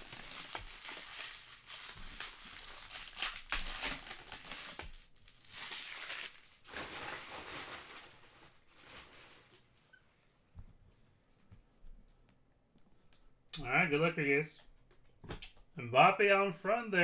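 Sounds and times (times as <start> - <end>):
plastic wrappers crinkling and tearing: 0.0 - 9.8.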